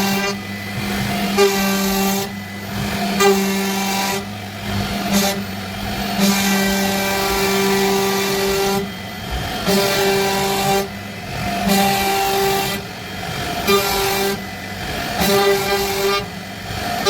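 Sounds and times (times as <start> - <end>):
cnc router spindle whine: 0.0 - 17.0.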